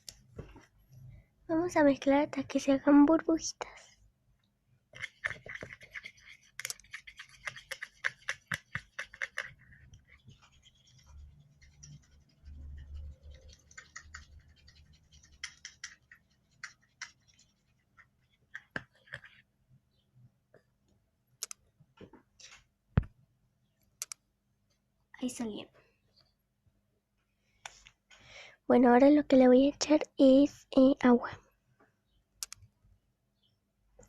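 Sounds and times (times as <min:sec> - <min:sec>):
stirrer scraping in container: 0:05.0 - 0:19.4.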